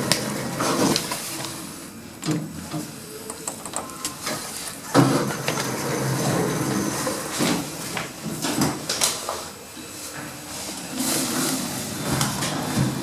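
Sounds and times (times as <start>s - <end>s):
lift doors sliding: 0.0s - 9.5s.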